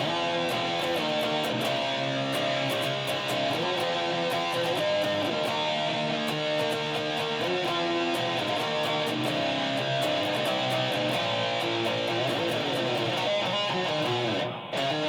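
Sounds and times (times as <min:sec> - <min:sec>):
heavy metal guitar chords: 0:00.0 - 0:15.0.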